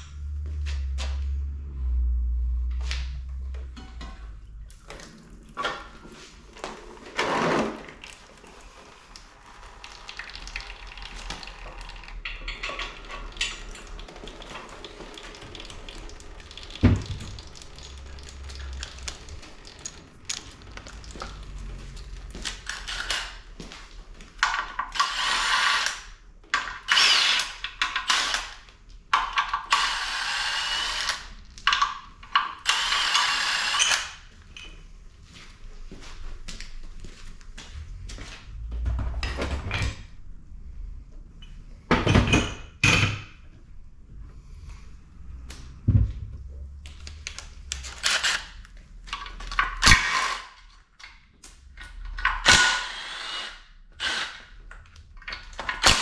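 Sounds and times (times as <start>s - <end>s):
metal parts clicking and knocking: 11.4s - 14.4s, 16.6s - 21.6s, 46.9s - 53.4s.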